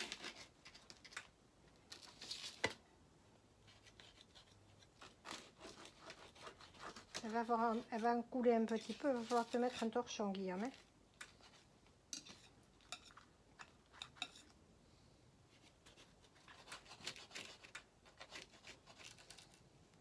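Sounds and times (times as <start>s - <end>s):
knife cutting pizza on plate: 4.0s - 9.9s, 15.9s - 19.5s.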